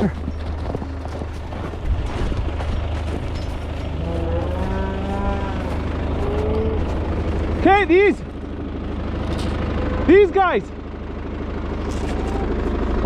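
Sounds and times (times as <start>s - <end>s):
cow mooing: 0.0s - 1.9s, 3.5s - 7.8s
steady low hum: 0.0s - 13.0s.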